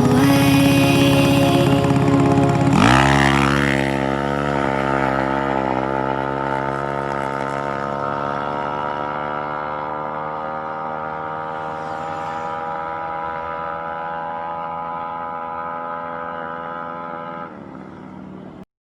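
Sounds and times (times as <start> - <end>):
scooter engine running: 0.0 - 11.6.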